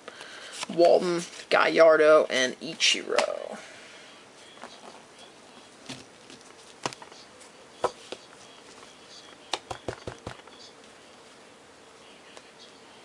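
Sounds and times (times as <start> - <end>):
cards tapping on a table: 7.8 - 8.3, 9.5 - 10.5.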